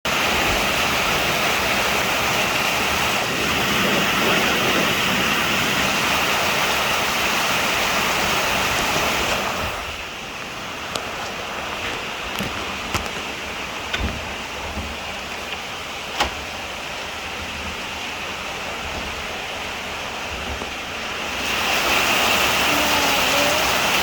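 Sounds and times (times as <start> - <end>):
strong wind through trees: 0.0 - 24.0.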